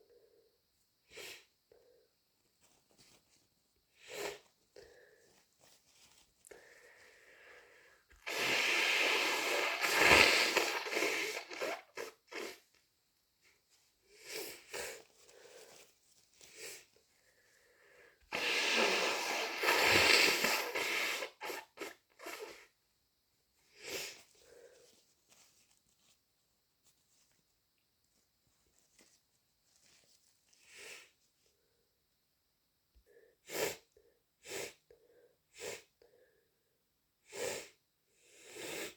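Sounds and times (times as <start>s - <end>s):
person blowing nose: 4.0s - 5.1s, 6.5s - 12.7s, 14.1s - 15.8s, 16.5s - 16.8s, 18.3s - 22.8s, 23.7s - 24.7s, 30.6s - 31.1s, 33.4s - 34.8s, 35.5s - 35.9s, 37.2s - 38.9s.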